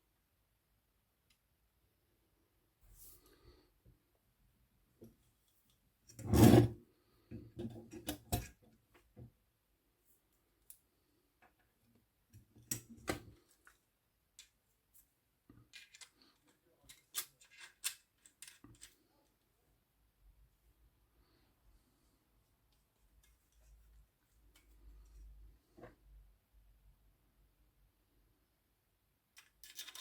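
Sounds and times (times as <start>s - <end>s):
metal parts and tools handled: 15.6s - 19.0s.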